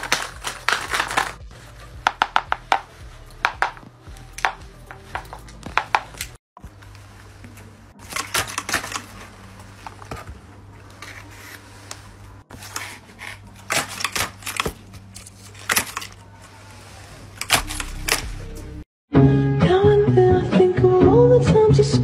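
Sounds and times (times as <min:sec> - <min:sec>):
stiff paper crinkling: 0:00.0 - 0:02.0.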